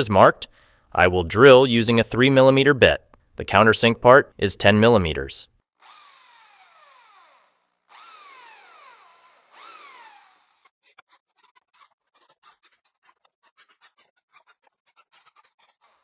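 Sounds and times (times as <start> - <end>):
electric drill drilling wood: 5.8 - 11.0.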